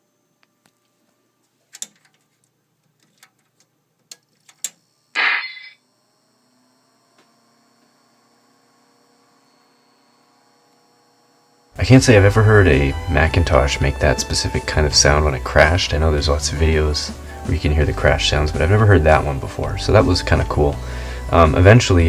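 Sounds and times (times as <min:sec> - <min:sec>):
faint hum with held tones: 0:00.0 - 0:22.0
computer crash sound: 0:05.2 - 0:05.8.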